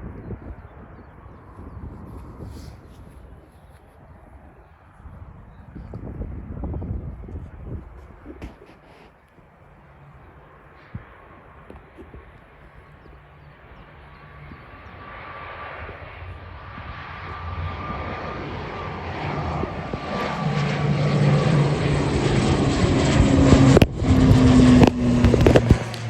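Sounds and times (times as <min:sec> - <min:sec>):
turboprop engines humming: 0:00.0 - 0:26.0.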